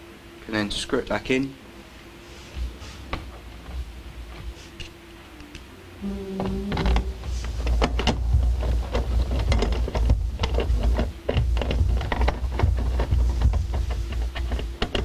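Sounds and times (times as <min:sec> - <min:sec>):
low rumble: 0:06.0 - 0:12.0.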